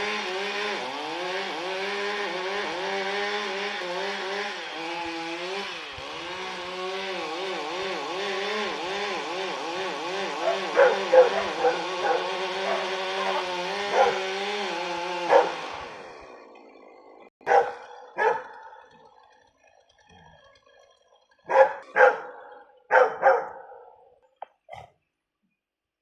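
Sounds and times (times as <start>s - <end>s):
drawn-out wavering sound: 5.6s - 23.9s
dog barking: 10.3s - 14.3s, 15.3s - 15.6s, 17.4s - 18.8s, 21.5s - 24.0s.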